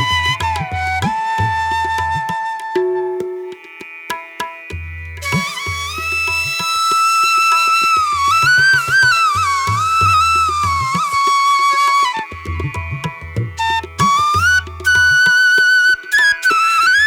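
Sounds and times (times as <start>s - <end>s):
flute melody: 0.0s - 3.7s, 5.2s - 17.0s
drum and percussion beats: 12.4s - 15.4s.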